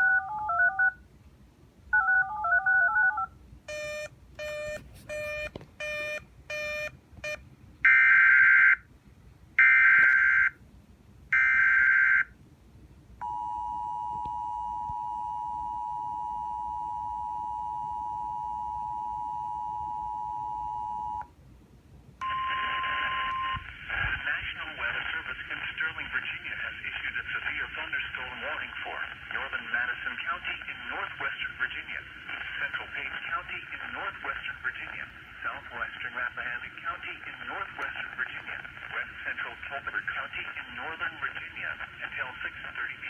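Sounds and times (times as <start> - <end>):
short beeps: 3.7 - 7.4
two-tone attention signal: 22.2 - 23.6.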